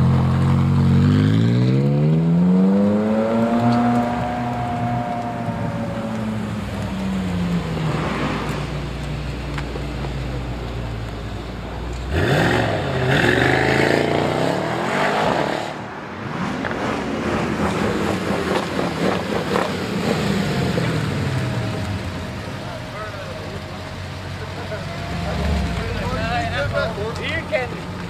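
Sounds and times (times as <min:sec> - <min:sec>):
engine revving and accelerating: 0:00.0 - 0:06.8, 0:12.0 - 0:22.2, 0:24.6 - 0:26.8
sports car engines running: 0:00.0 - 0:28.0.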